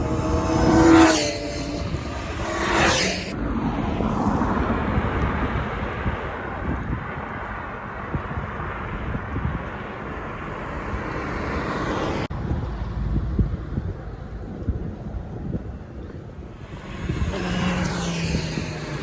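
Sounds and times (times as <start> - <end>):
wind on microphone: 0.0 - 10.2, 10.8 - 19.0
road traffic noise: 0.0 - 19.0.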